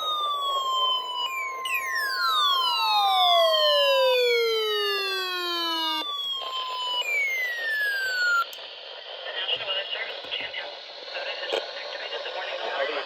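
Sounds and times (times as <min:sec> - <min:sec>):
siren-like falling tones: 0:00.0 - 0:08.6
steady radio alert tone: 0:05.0 - 0:13.0
hissy radio static: 0:08.5 - 0:13.0.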